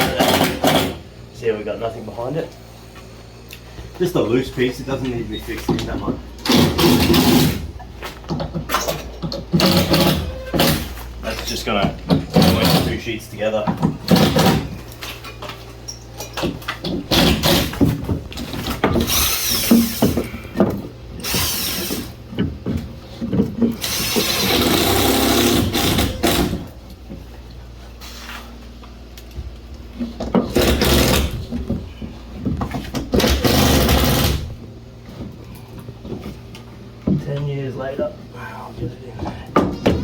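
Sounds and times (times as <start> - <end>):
power drill driving screws: 18.9 - 20.2, 21.2 - 22.2, 23.8 - 26.7, 30.5 - 31.4, 33.2 - 34.5
knocks and handling noise: 31.3 - 33.4.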